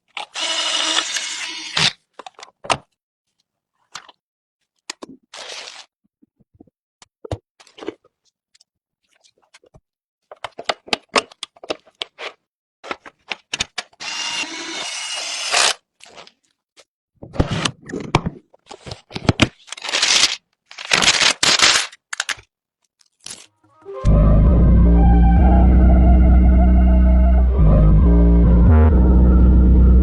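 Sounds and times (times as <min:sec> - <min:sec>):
computer parts clicking and snapping: 0:21.3 - 0:23.5
guitar music: 0:23.7 - 0:30.0.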